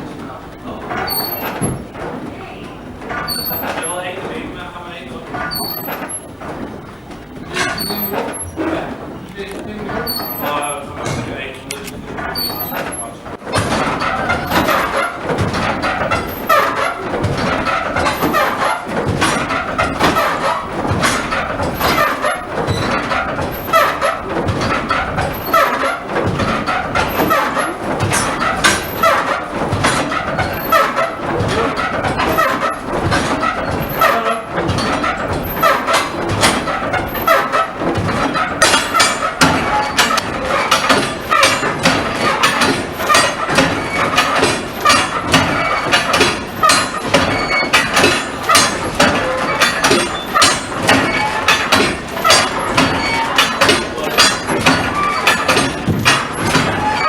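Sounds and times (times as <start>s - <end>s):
frame saws clattering: 0.0s - 57.0s.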